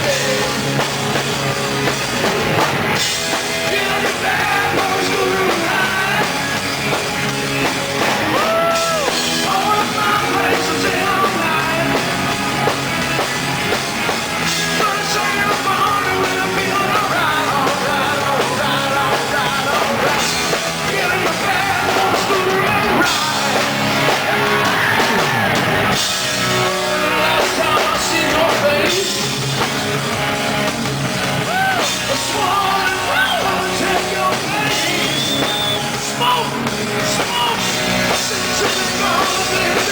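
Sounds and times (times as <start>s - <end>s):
lead singer singing: 0.0s - 1.3s, 3.0s - 7.2s, 8.0s - 12.8s, 14.3s - 29.9s, 31.4s - 39.9s
hard rock band playing: 0.0s - 39.9s.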